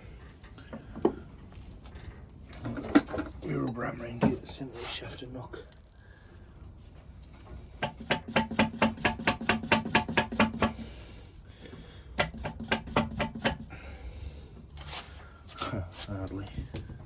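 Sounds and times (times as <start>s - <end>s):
rubber hammer knocking metal shaft: 7.8s - 10.8s, 12.2s - 13.7s.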